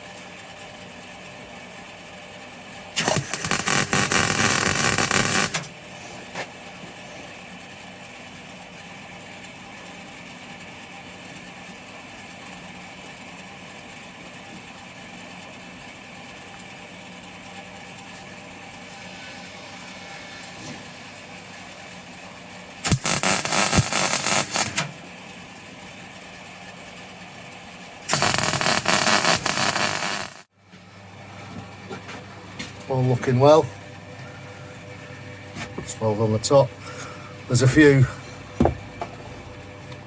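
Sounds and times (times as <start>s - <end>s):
arc welding crackle: 3.0s - 5.7s, 22.8s - 24.9s, 28.1s - 30.5s
steady low hum: 28.1s - 40.0s.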